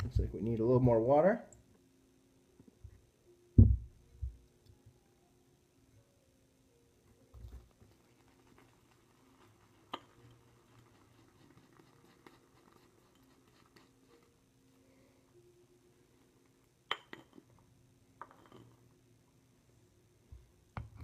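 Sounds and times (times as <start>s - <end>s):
shaving brush squishing lather: 7.5s - 14.4s.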